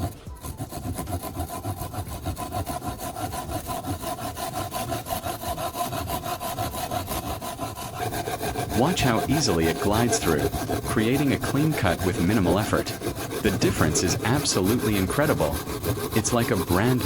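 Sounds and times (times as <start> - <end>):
hand saw cutting wood: 0.0 - 17.0.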